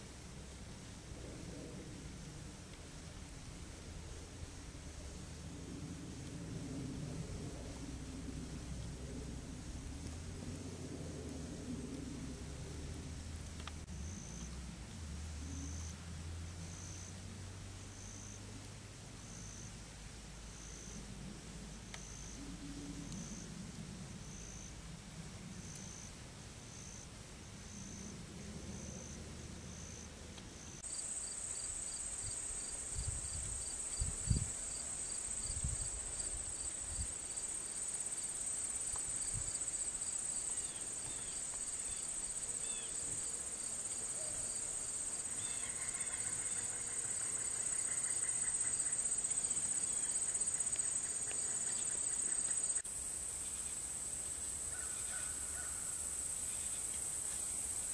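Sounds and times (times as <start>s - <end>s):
insects chirping and trilling: 13.6s - 14.6s, 15.4s - 18.5s, 19.2s - 19.8s, 20.5s - 21.1s, 21.7s - 24.8s, 25.5s - 57.9s.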